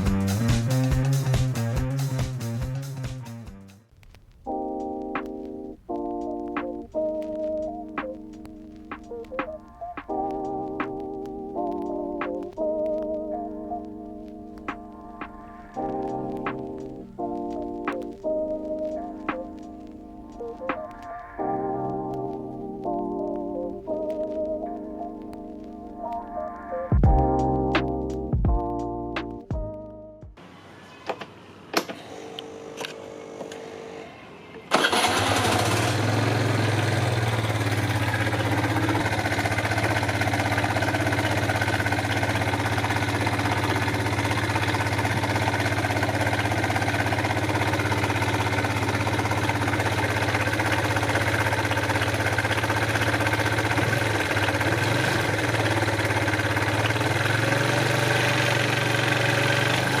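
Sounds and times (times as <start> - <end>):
scooter engine idling: 34.7 - 60.0.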